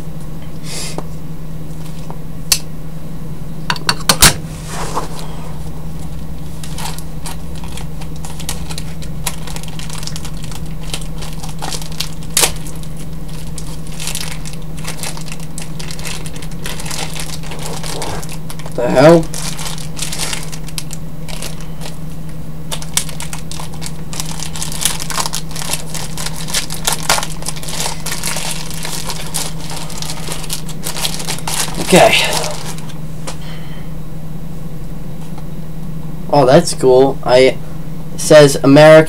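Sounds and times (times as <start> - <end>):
steady low hum: 0.0 - 39.0
packaging crinkling: 4.3 - 22.1, 22.7 - 33.4.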